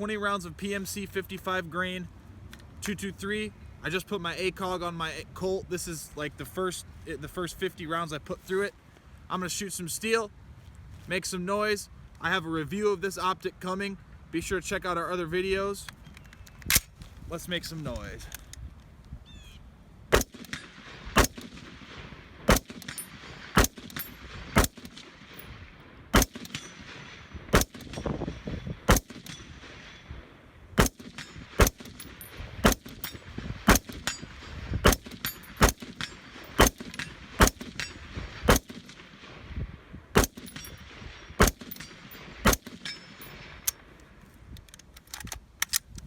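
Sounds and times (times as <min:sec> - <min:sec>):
rifle shots: 0:20.1 - 0:28.1, 0:28.8 - 0:30.0, 0:30.8 - 0:39.4, 0:40.2 - 0:43.6.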